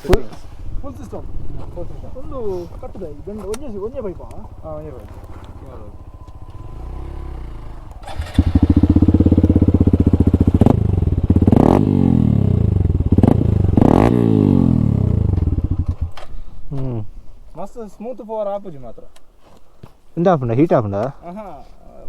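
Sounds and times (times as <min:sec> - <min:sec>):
motorcycle engine revving: 0:00.6 - 0:16.3.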